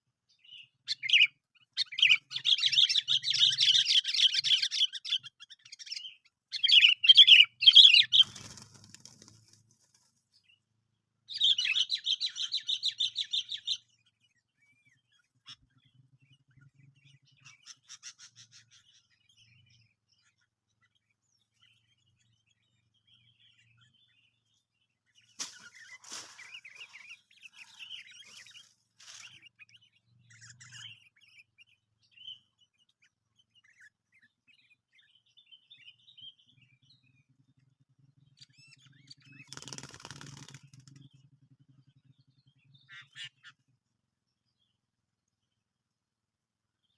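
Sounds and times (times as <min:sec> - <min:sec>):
bulbuls chattering calls: 0:42.5 - 0:43.6.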